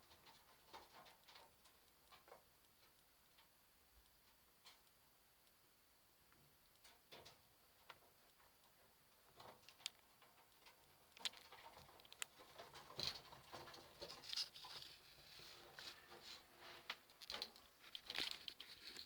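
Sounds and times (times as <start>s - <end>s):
small animals scratching and clicking: 6.8s - 19.0s.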